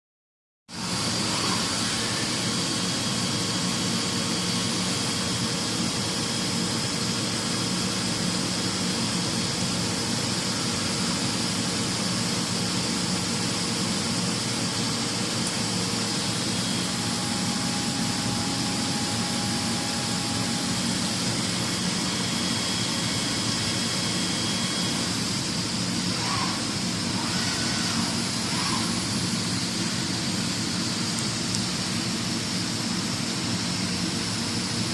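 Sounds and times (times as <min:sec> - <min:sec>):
boring mill machine running: 0:00.8 - 0:34.9
low hum: 0:14.6 - 0:32.6.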